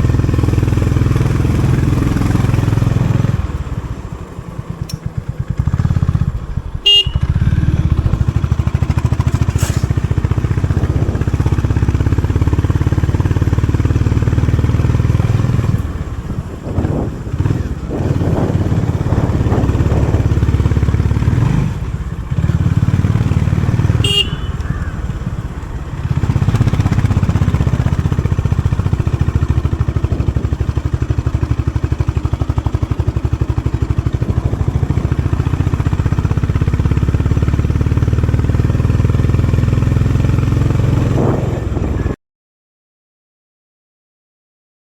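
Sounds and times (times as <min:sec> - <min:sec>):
motorcycle engine running: 0:00.0 - 0:42.2
motorcycle horn toots: 0:06.8 - 0:07.6, 0:23.8 - 0:25.2.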